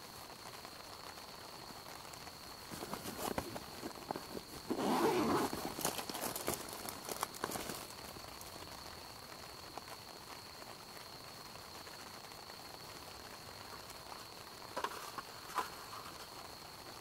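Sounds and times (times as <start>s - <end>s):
insect trilling: 1.0s - 9.0s.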